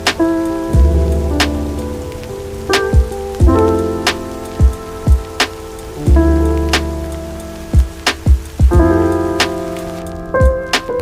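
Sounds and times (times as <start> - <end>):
held music chords: 0.0 - 11.0
rain: 0.0 - 11.0
deep bass drum hits: 0.8 - 1.6, 3.0 - 3.6, 7.8 - 9.0.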